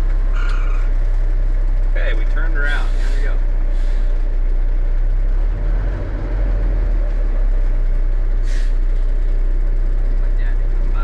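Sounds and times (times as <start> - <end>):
diesel truck engine running: 0.0 - 11.0
short air hiss: 8.4 - 8.8.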